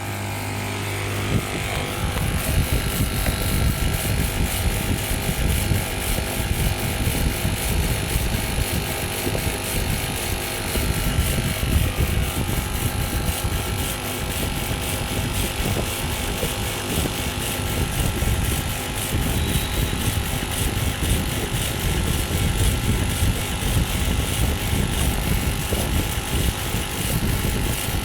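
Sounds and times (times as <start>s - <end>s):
stone carving machine running: 0.0s - 28.0s.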